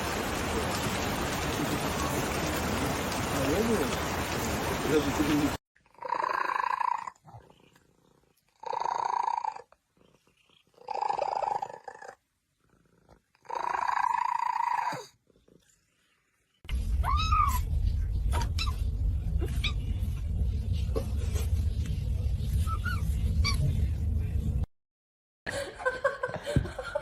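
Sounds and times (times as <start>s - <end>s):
steady low rumble: 16.7s - 24.7s
cat meowing: 17.0s - 17.6s.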